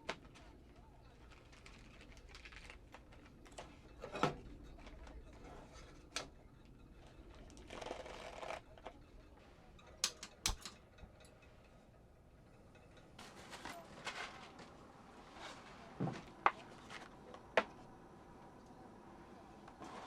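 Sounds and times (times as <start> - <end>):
small objects knocking and clicking: 10.0 - 10.8.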